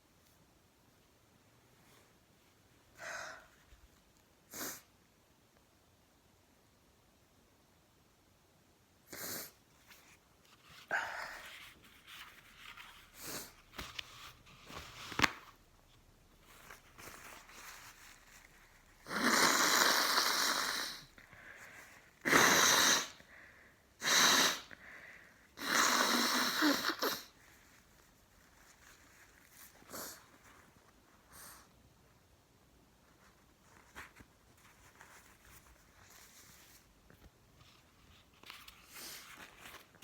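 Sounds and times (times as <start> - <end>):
faint sniffs: 4.5 - 4.9, 9.1 - 13.8, 19.0 - 27.8, 29.5 - 31.8
person blowing nose: 4.5 - 4.9, 9.1 - 9.6, 13.1 - 13.6, 19.0 - 21.6, 22.2 - 23.3, 24.0 - 25.0, 25.6 - 27.4
person sneezing: 22.3 - 23.2, 24.0 - 24.7.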